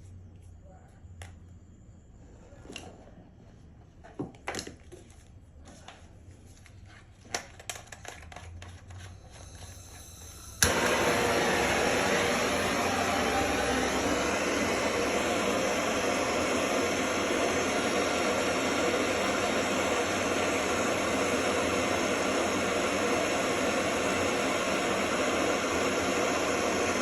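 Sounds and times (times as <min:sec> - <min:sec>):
faint gas hiss: 0:09.2 - 0:11.0
torch flame hissing: 0:09.2 - 0:27.0
igniter click: 0:10.6 - 0:14.6.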